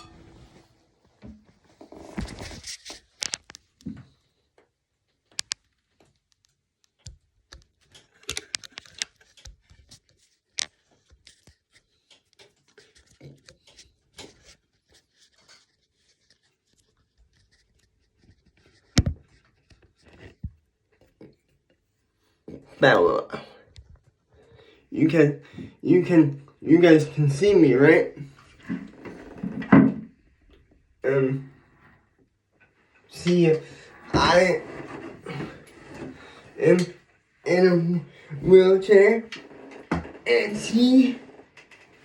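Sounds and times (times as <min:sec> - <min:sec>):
phone being handled: 0:08.0 - 0:11.6.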